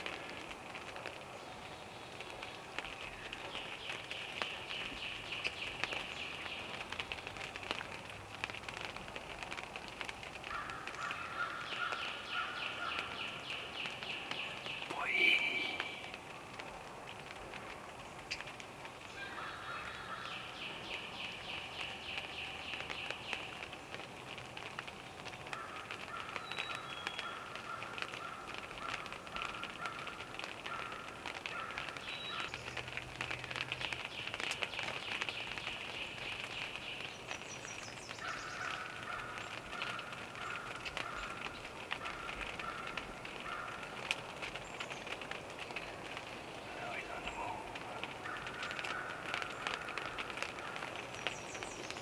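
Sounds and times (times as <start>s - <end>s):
small ticks: 2.1s - 14.9s, 15.8s - 19.1s, 19.8s - 46.6s, 47.2s - 52.0s
bird repeated call: 11.0s - 16.3s.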